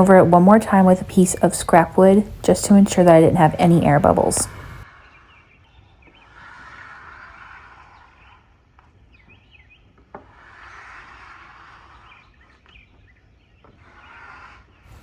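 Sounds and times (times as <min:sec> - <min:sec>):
small birds chirping: 0:04.4 - 0:15.0.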